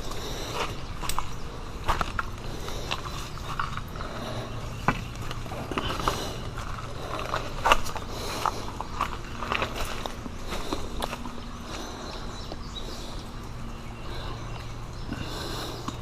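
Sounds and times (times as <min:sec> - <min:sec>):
footsteps on rocky ground: 0:00.0 - 0:16.0.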